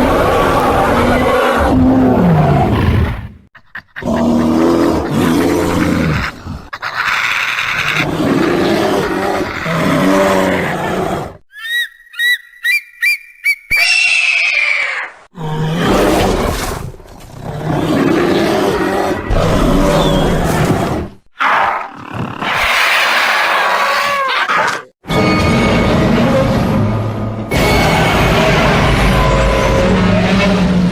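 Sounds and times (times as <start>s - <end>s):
monster roaring: 0.0s - 3.4s
high-pitched chirping calls: 11.5s - 14.9s.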